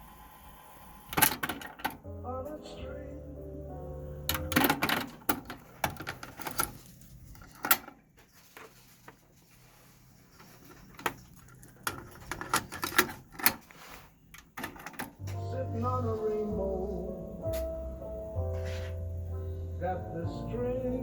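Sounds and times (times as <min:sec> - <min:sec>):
cassette deck mechanical clicks: 0:01.1 - 0:02.0, 0:04.3 - 0:06.8.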